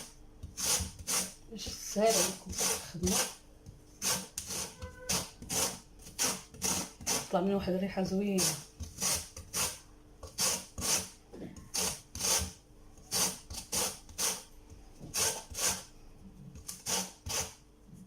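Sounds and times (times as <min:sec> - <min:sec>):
lemon peel rasping on hand grater: 0:00.5 - 0:01.4, 0:02.0 - 0:03.4, 0:04.0 - 0:07.3, 0:08.4 - 0:11.1, 0:11.7 - 0:14.4, 0:15.1 - 0:15.8, 0:16.7 - 0:17.6.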